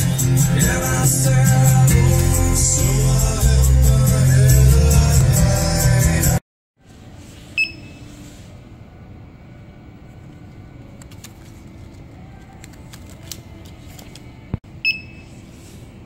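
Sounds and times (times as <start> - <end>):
music: 0.0 - 6.4
short electronic beep: 7.6 - 8.1, 14.8 - 15.3.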